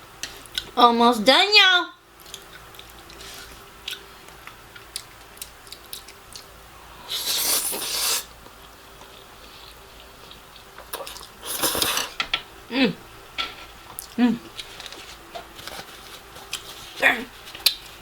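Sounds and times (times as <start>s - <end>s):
close chewing of noodles: 2.2s - 8.3s, 9.0s - 12.2s.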